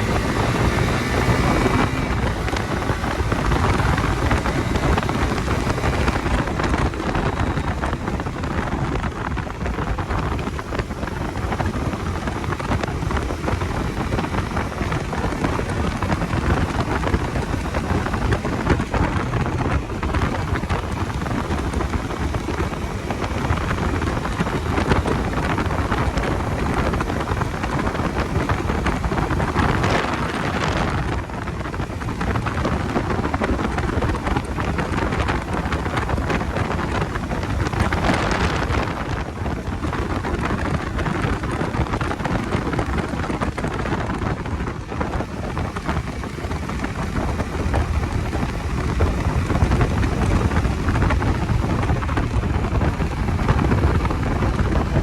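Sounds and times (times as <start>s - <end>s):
wind buffeting microphone: 0.0s - 55.0s.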